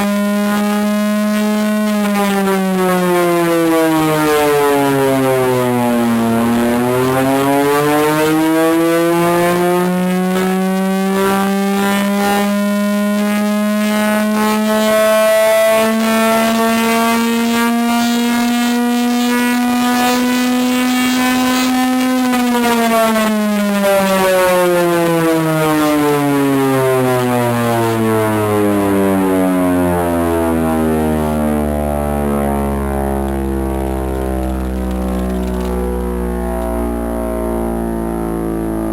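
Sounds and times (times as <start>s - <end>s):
air raid siren wailing: 0.1s - 38.9s.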